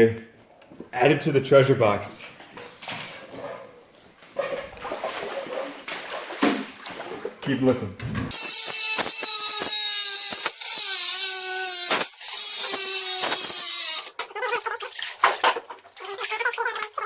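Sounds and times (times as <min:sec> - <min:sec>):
small electric motor whining: 0:08.3 - 0:14.2.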